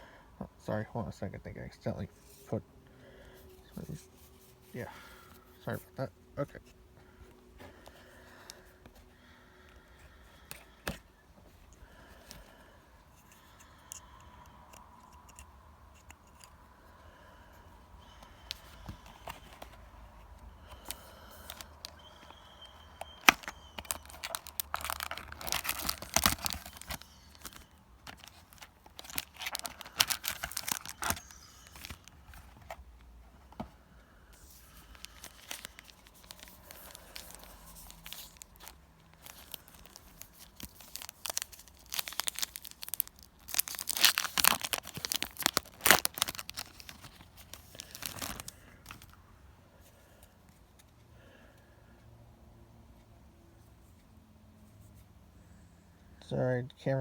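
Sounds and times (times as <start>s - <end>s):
rustling and handling: 2.0s - 16.7s, 17.5s - 49.2s
wrappers tearing and crinkling: 20.7s - 32.4s, 34.4s - 49.2s.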